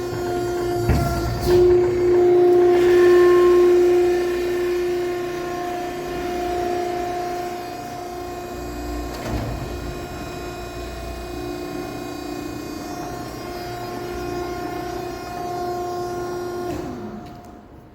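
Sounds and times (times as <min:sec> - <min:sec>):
machine clunk: 0:00.0 - 0:03.6, 0:09.1 - 0:10.2
hydraulic power unit whining: 0:00.0 - 0:17.9.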